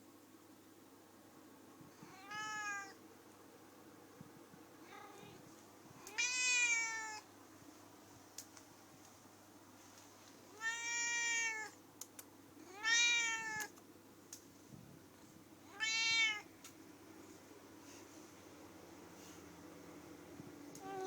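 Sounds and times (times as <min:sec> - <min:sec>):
cat meowing: 0:02.1 - 0:03.0, 0:06.1 - 0:07.2, 0:10.6 - 0:11.8, 0:12.7 - 0:13.7, 0:15.7 - 0:16.5.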